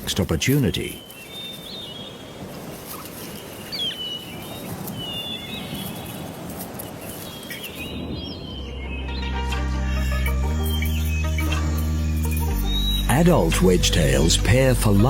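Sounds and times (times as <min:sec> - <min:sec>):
birds chirping and whistling: 0:00.8 - 0:15.0
music: 0:08.6 - 0:15.0.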